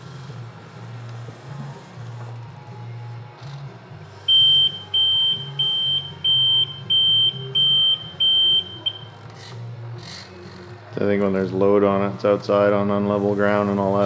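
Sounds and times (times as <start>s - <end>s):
high reverse alarm beeps: 4.2s - 9.2s.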